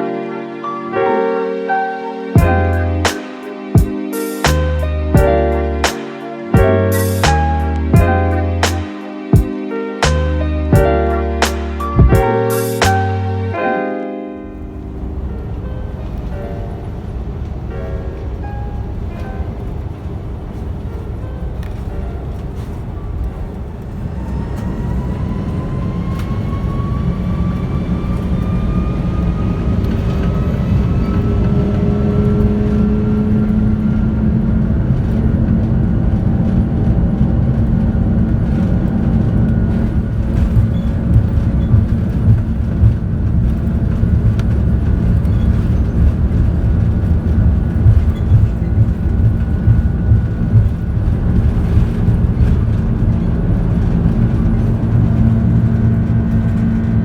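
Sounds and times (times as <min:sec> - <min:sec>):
heavy rumble: 0:06.6 - 0:08.8, 0:14.4 - 0:57.0
jet engines spooling up: 0:14.4 - 0:35.4, 0:37.5 - 0:56.9.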